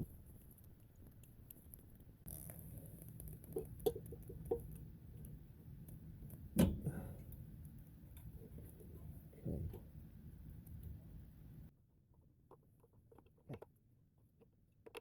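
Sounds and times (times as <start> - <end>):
low steady hum: 0.0 - 12.1.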